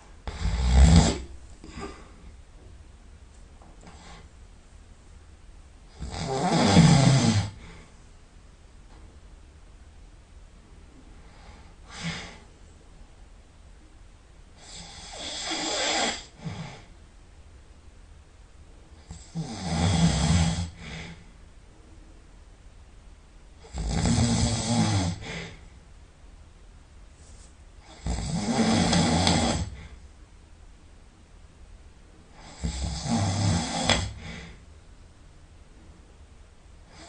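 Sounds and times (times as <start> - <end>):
person snoring heavily: 0.2 - 2.1, 5.9 - 7.9, 14.6 - 16.9, 19.0 - 21.3, 23.6 - 25.6, 27.8 - 30.0, 32.3 - 34.6
soft breath: 1.1 - 2.4, 3.6 - 4.4, 10.9 - 12.8, 20.6 - 22.2, 33.8 - 34.7.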